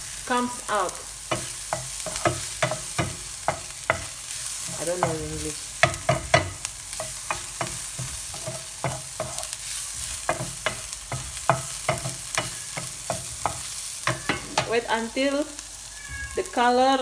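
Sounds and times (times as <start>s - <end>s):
onions sizzling in oil: 0.0s - 17.0s
utensil scraping a pan: 1.3s - 14.9s.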